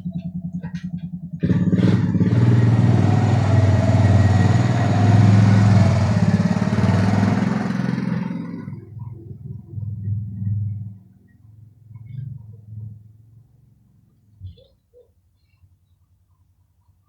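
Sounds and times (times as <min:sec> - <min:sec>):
atv engine revving: 0:00.0 - 0:09.0.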